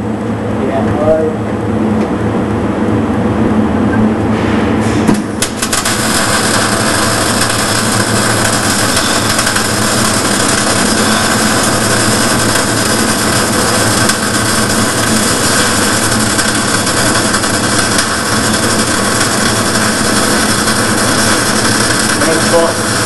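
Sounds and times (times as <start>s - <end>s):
arc welding crackling hiss: 5.1s - 23.0s.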